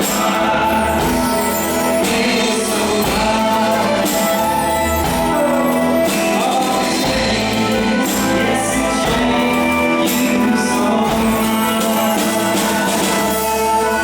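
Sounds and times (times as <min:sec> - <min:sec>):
bass guitar: 0:00.0 - 0:14.0
drums: 0:00.0 - 0:14.0
guitar: 0:00.0 - 0:14.0
person singing: 0:00.0 - 0:14.0.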